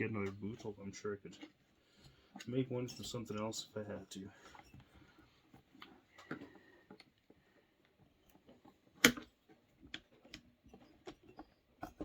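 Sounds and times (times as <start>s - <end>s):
clicks and knocks of parts handled: 4.4s - 12.0s.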